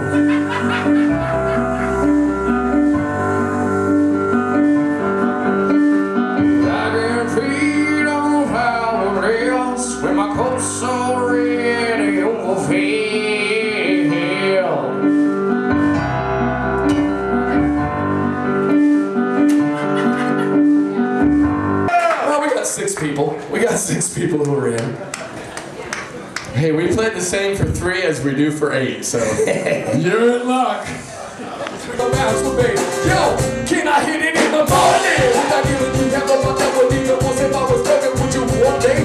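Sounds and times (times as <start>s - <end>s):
band music with bass and keyboard: 0.0s - 22.3s, 31.0s - 39.0s
person singing wavering vocal: 6.7s - 15.1s.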